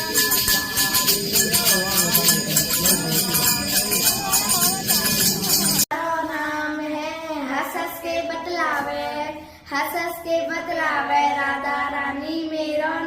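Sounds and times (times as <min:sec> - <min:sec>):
music with jingling percussion: 0:00.0 - 0:05.9
single voice singing: 0:00.0 - 0:06.6
voices singing: 0:00.0 - 0:06.8, 0:10.5 - 0:13.0.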